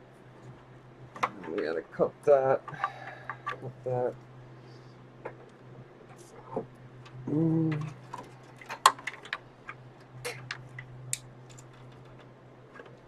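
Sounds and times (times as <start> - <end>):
low fan hum: 0.0 - 13.0
plastic parts clicking and snapping: 7.0 - 13.0
person humming: 7.2 - 8.0.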